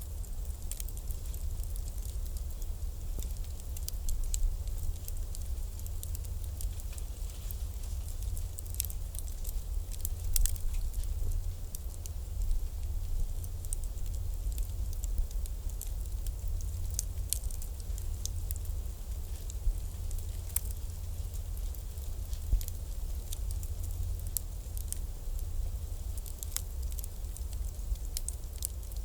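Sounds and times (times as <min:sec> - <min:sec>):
low rumble: 0:00.0 - 0:26.1
wood fire crackling and popping: 0:00.0 - 0:29.0.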